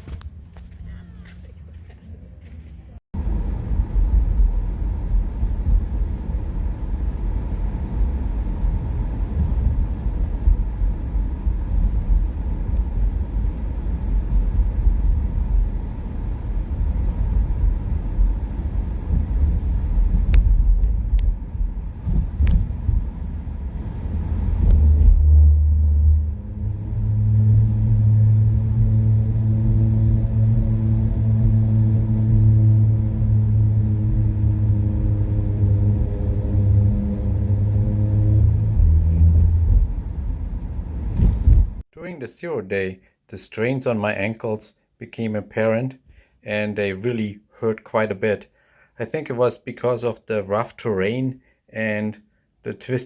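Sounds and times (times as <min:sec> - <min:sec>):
car driving rumble: 0:00.0 - 0:41.9
steady low hum: 0:00.0 - 0:42.2.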